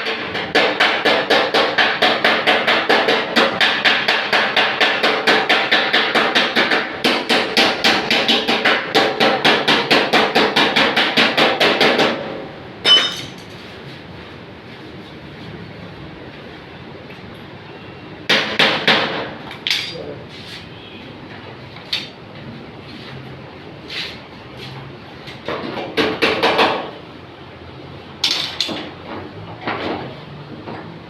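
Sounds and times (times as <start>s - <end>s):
hammer beating sheet metal: 0.0s - 13.4s, 18.3s - 20.0s, 25.5s - 27.0s.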